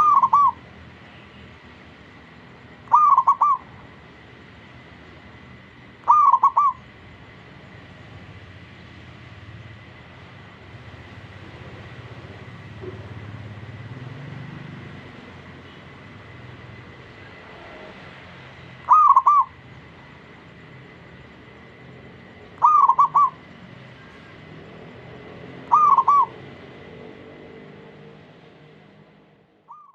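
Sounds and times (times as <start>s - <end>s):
dove cooing: 0.0s - 0.6s, 2.9s - 3.7s, 6.0s - 6.9s, 18.9s - 19.6s, 22.6s - 23.4s, 25.6s - 26.4s, 29.7s - 29.9s.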